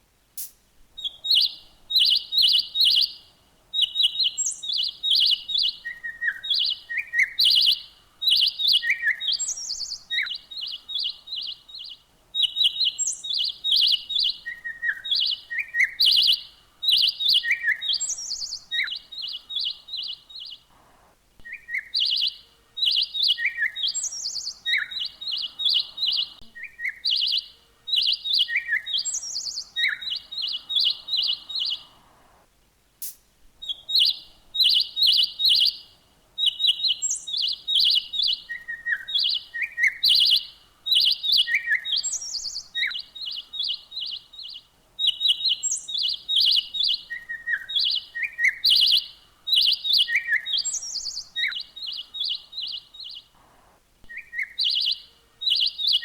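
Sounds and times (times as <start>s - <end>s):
birdsong with high chirps: 0.0s - 56.0s
bird whistled notes: 21.4s - 31.9s, 36.5s - 44.2s, 45.0s - 52.8s.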